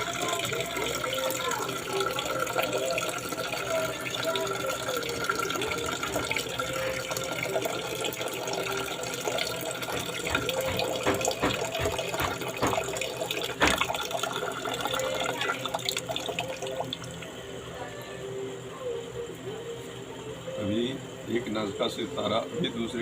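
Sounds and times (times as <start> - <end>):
water running and splashing: 0.0 - 17.3.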